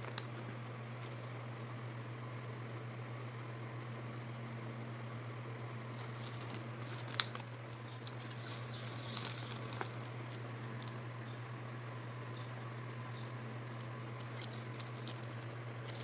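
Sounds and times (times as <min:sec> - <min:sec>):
plastic packaging crinkling: 0:00.0 - 0:01.3, 0:05.9 - 0:11.0, 0:14.2 - 0:16.0
steady low hum: 0:00.0 - 0:16.0.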